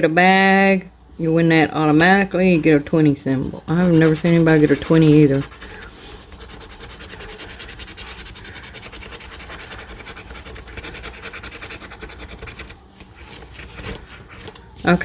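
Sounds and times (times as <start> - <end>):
scratching lottery ticket coating: 3.5 - 15.0.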